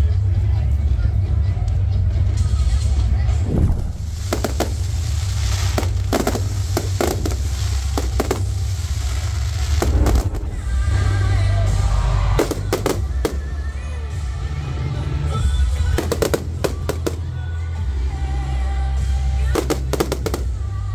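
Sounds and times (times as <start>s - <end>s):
continuous low rumble: 0.0s - 20.9s
loud music: 3.2s - 20.9s
fireworks bursts and bangs: 3.3s - 14.4s, 15.7s - 17.5s, 19.3s - 20.9s.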